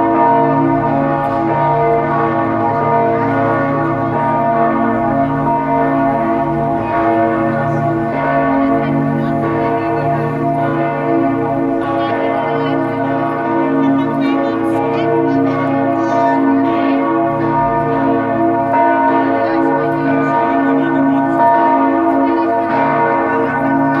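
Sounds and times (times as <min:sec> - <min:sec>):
church bells pealing: 0:00.0 - 0:24.0.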